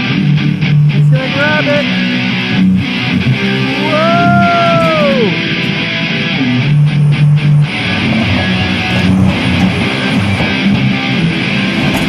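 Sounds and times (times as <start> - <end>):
guitar strumming chords: 0.0 - 12.0.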